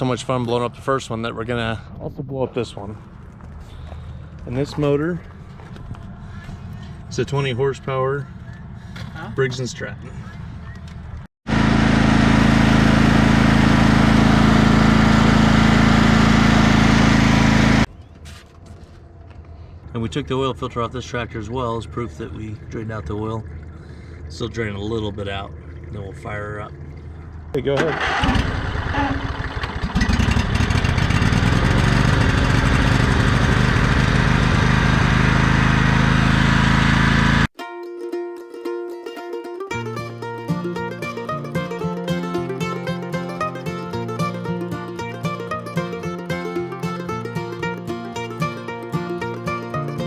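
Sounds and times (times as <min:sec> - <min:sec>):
lawn tractor engine running: 0:11.5 - 0:17.9, 0:29.5 - 0:37.4.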